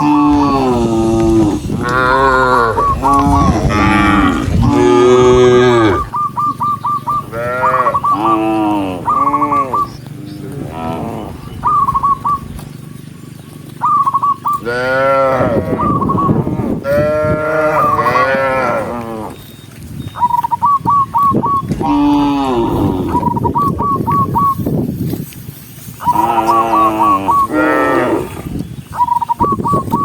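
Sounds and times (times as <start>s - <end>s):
cattle mooing: 0.0s - 6.2s, 7.1s - 12.2s, 14.5s - 19.5s, 21.7s - 23.8s, 26.0s - 28.6s
high wavering chirp: 0.0s - 10.1s, 11.3s - 14.6s, 19.4s - 24.7s.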